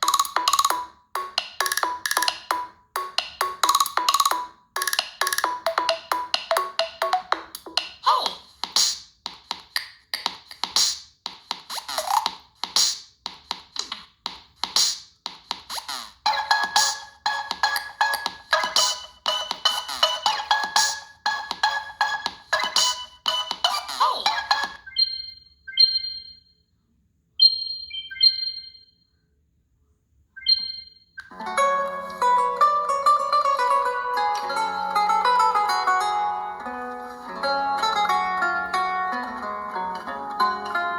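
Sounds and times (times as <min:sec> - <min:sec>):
electronic ringtone: 0:00.0 - 0:07.5, 0:16.3 - 0:26.5, 0:27.4 - 0:29.0, 0:30.4 - 0:31.1
electronic ringtone notes: 0:00.0 - 0:07.6
plucked-string ringtone notes: 0:00.0 - 0:07.6, 0:31.3 - 0:40.9.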